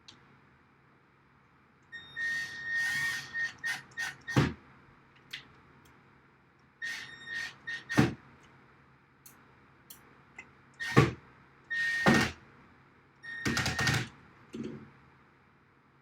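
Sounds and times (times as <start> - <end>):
power drill whine: 2.0 - 4.1, 6.8 - 8.0, 11.7 - 12.3.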